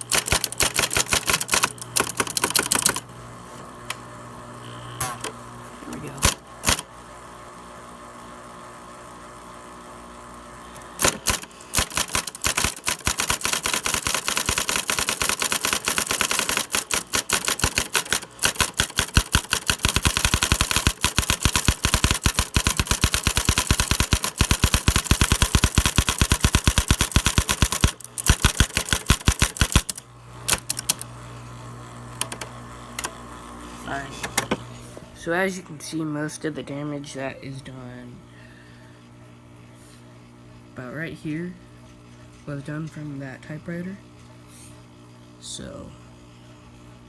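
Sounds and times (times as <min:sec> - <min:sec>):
typewriter clacking: 0:00.0 - 0:03.0, 0:06.1 - 0:06.8, 0:11.0 - 0:31.1
low steady hum: 0:29.8 - 0:47.0.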